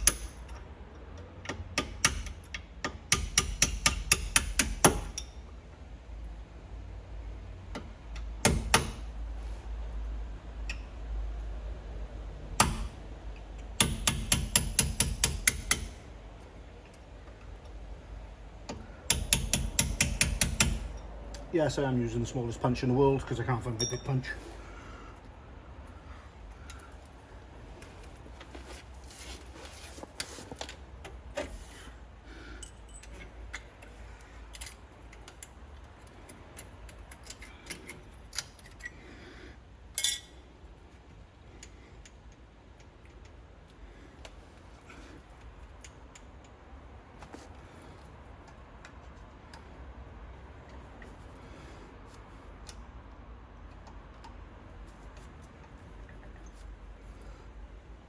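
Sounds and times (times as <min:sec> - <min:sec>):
sharp metal taps: 0:00.0 - 0:00.4, 0:01.5 - 0:05.4, 0:13.8 - 0:16.0, 0:18.7 - 0:21.0
metallic clicks of hand tools: 0:00.0 - 0:05.4, 0:12.6 - 0:16.0, 0:18.7 - 0:21.5, 0:32.6 - 0:39.0.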